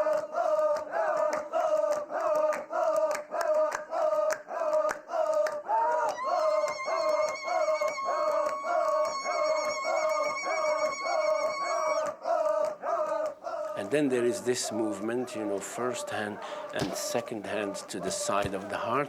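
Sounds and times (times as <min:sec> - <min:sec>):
group chanting rhythmically: 0:00.0 - 0:19.0
held high note: 0:06.2 - 0:12.1.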